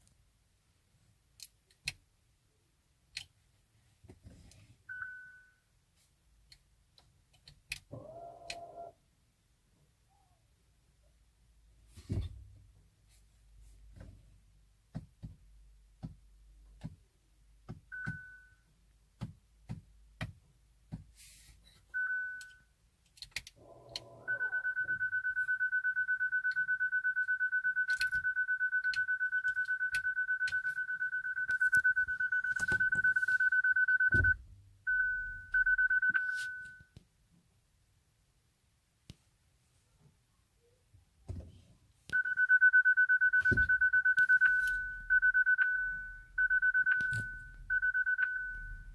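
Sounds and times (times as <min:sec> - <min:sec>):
dashboard warning chime beeping: 0:24.1 - 0:36.9, 0:42.1 - 0:48.9.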